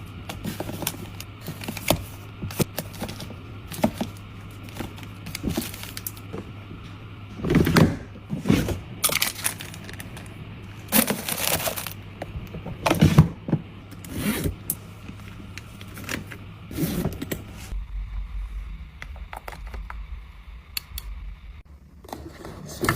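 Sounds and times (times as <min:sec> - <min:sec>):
items knocking and clicking: 0:00.2 - 0:10.3.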